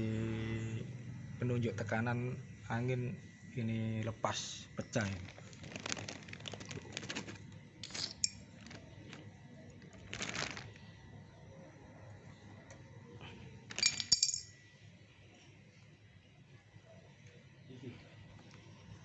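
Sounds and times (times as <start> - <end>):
bright clink with ring: 13.8 - 14.6.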